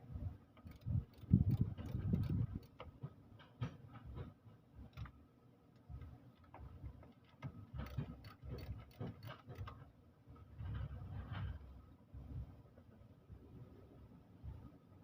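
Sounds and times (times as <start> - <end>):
hand tools clicking and knocking: 0.6 - 5.1, 6.5 - 9.9.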